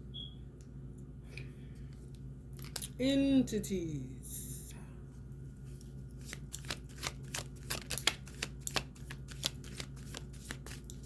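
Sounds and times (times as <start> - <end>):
cards being shuffled: 5.8 - 11.0.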